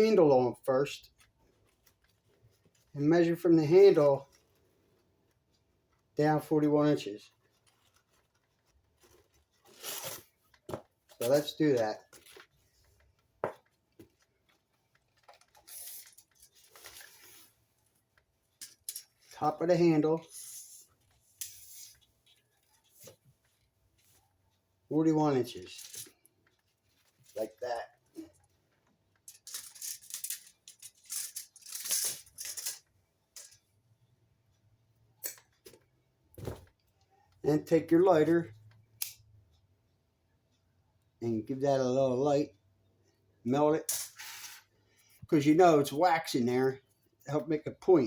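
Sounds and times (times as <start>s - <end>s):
soft rustling and rubbing: 1.0s - 3.0s, 3.9s - 19.6s, 20.2s - 24.8s.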